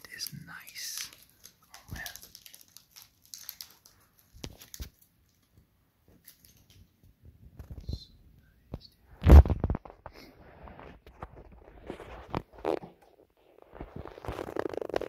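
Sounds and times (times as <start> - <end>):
plastic packaging crinkling: 0.0 - 6.9, 10.7 - 15.0.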